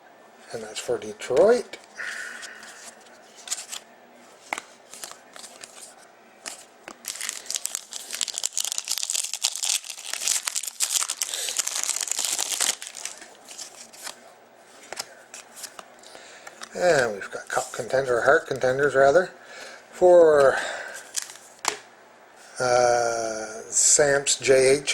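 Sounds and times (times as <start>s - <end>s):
wrapper crinkling: 4.4s - 14.2s, 21.1s - 21.6s.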